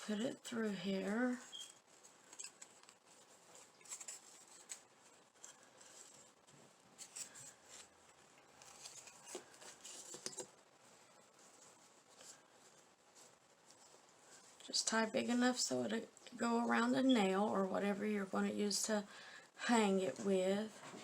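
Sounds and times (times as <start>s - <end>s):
rope rustling and light clicks: 1.4s - 14.8s.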